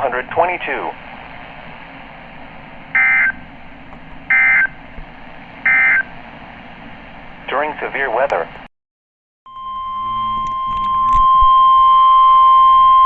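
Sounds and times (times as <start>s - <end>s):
steady radio hiss: 0.0s - 8.7s, 9.9s - 11.2s
buzzing digital data tones: 9.5s - 11.4s.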